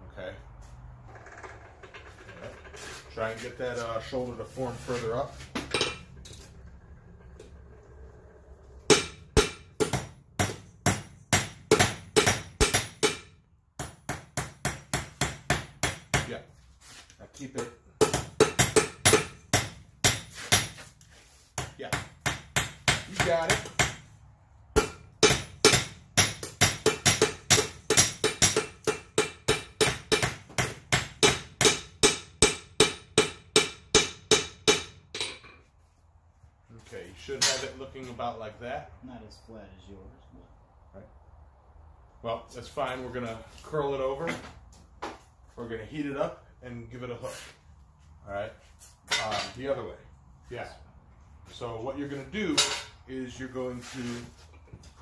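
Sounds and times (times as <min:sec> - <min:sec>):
hammer striking steel on anvil: 0:08.9 - 0:16.3, 0:18.0 - 0:20.8, 0:24.8 - 0:35.6.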